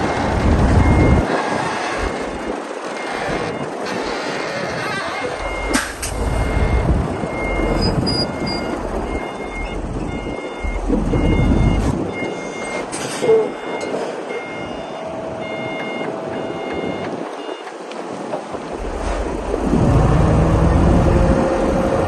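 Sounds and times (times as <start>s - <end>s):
reversing alarm beeping: 0.0s - 1.3s, 2.0s - 3.8s, 5.3s - 17.8s
diesel engine rumbling: 0.0s - 22.0s.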